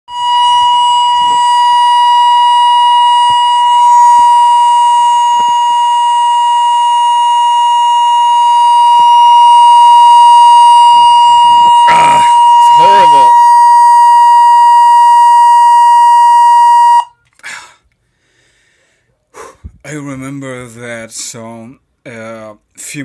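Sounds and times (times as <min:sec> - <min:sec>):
high-pitched electronic tone: 0:00.1 - 0:17.1.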